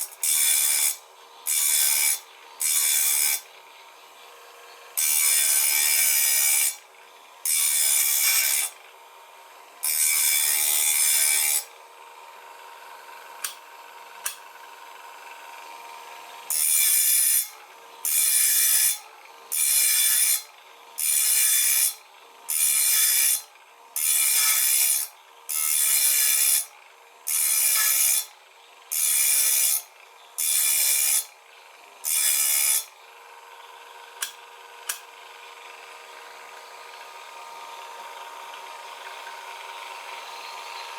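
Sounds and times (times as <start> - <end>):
grinding wheel rasping on saw teeth: 0.0 - 3.6, 4.9 - 8.8, 9.8 - 11.7, 16.4 - 31.3, 32.0 - 33.0.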